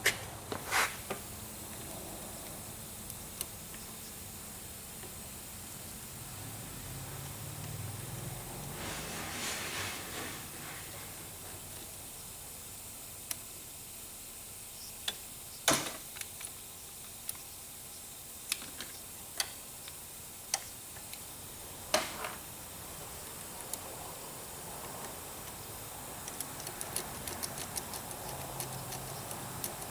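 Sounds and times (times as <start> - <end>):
soft rustle: 8.8 - 11.1
metal parts clicking and tapping: 26.2 - 29.9.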